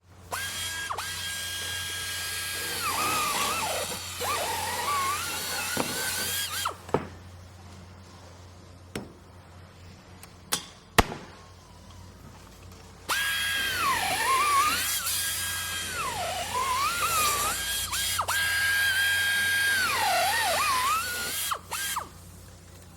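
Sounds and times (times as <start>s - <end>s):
electric drill whining: 0.3s - 6.8s, 13.1s - 22.1s.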